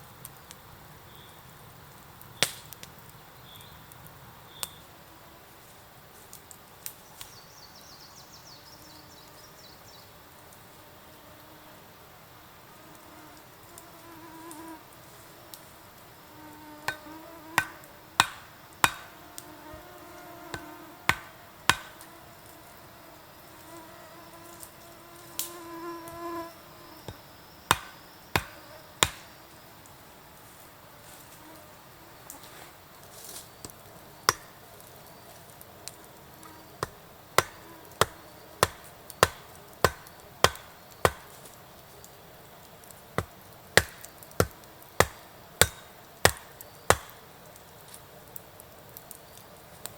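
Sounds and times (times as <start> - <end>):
insect buzzing: 7.2 - 42.2.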